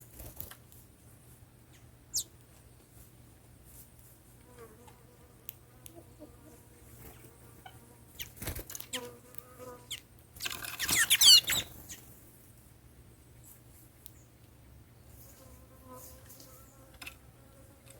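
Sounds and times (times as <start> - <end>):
finches chirping and warbling: 9.9 - 12.0.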